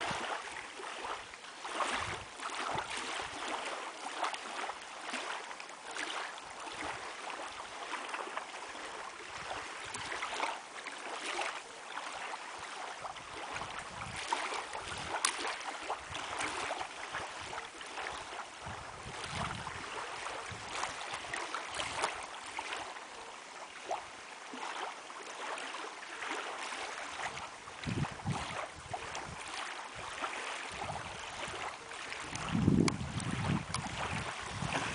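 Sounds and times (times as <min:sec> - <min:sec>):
wind rumble on microphone: 0:00.0 - 0:03.6, 0:06.4 - 0:10.5, 0:12.4 - 0:22.8, 0:27.1 - 0:34.9
lake water lapping: 0:00.0 - 0:34.9.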